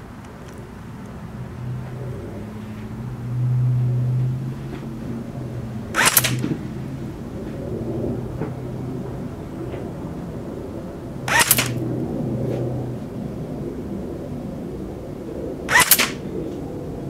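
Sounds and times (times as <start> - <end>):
airsoft gun burst: 6.0 - 6.4, 11.3 - 11.8, 15.7 - 16.2.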